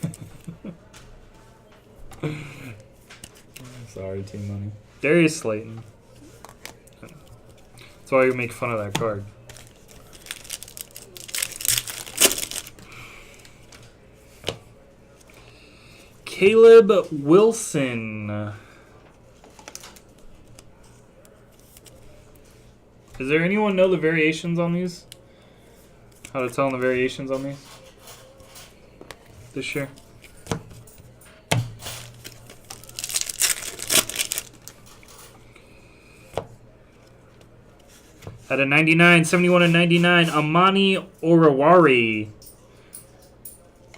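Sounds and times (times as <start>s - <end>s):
crinkling card pack wrappers: 8.8s - 13.4s, 31.9s - 35.1s.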